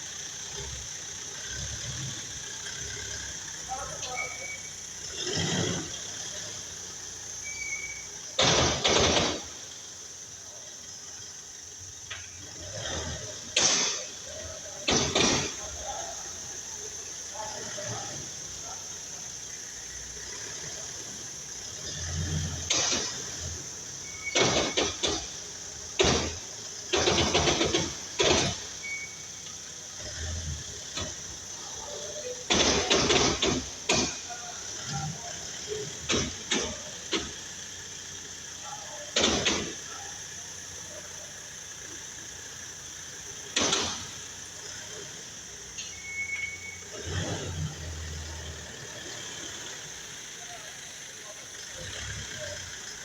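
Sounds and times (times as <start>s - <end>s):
harsh drivetrain noise bursts: 0.0s - 53.0s
vehicle hum: 0.0s - 53.0s
metallic drivetrain clunks and knocks: 24.1s - 29.1s, 32.5s - 35.0s.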